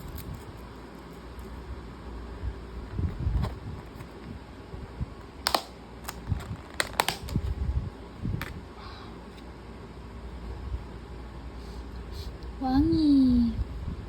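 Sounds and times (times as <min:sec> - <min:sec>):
plastic packaging clicks: 0:05.4 - 0:07.5.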